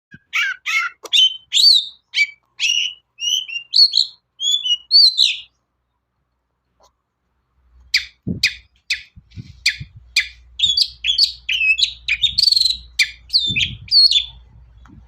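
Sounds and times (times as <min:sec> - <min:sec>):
bird singing chirps and whistles: 0:00.1 - 0:05.6, 0:07.9 - 0:14.4.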